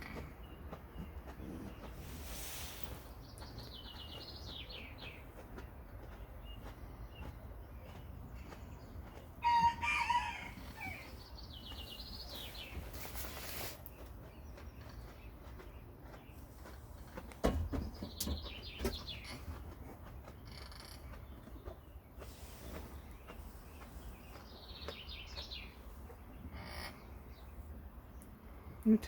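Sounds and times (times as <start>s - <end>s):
rooster crowing: 9.4s - 11.1s.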